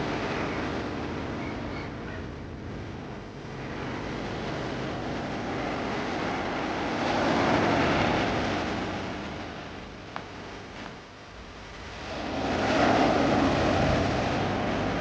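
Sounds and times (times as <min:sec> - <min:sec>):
ocean wave breaking: 0:03.6 - 0:10.6, 0:11.7 - 0:15.0.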